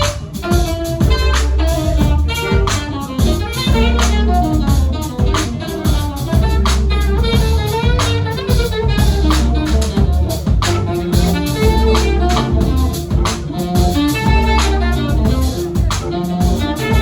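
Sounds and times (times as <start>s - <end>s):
bass line: 0.0s - 17.0s
drum kit: 0.0s - 17.0s
keyboard: 0.0s - 17.0s
saxophone: 0.0s - 17.0s.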